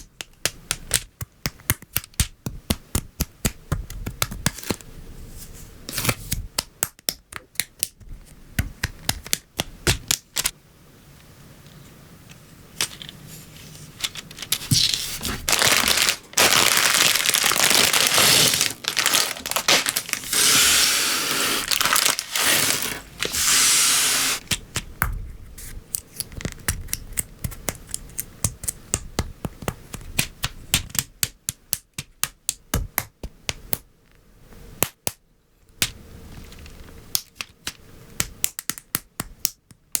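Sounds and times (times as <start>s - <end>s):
plastic bag crinkling and tearing: 14.0s - 24.4s.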